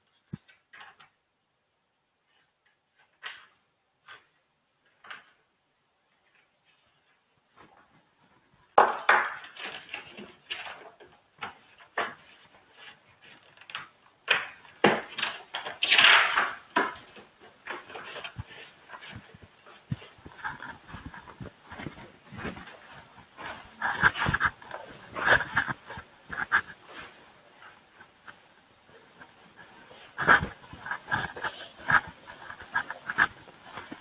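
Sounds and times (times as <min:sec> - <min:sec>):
rough scraping: 0:17.5 - 0:27.2, 0:29.6 - 0:34.0.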